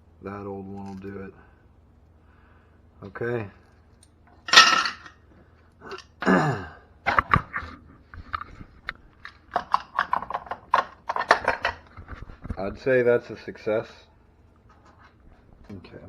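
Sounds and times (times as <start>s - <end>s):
person grunting: 5.8s - 6.9s.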